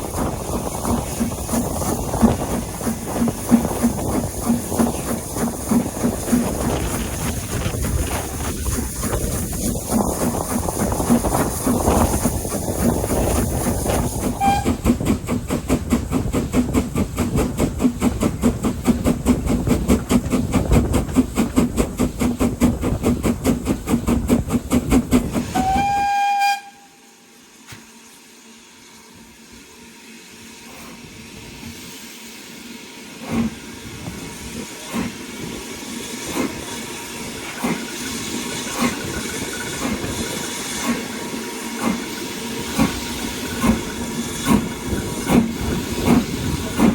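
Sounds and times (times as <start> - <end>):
train rumbling on rails with clicks: 0.0 - 26.9, 27.6 - 28.2, 29.1 - 46.9
steam locomotive exhaust beating: 0.0 - 46.9
steam whistle: 14.3 - 14.8, 25.5 - 27.3.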